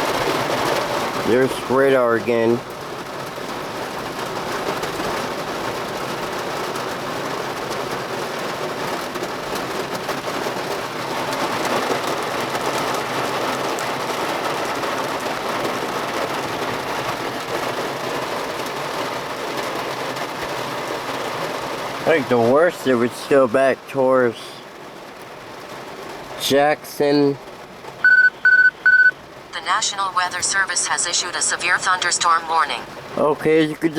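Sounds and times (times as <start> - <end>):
heavy rain on car roof: 0.0 - 33.9.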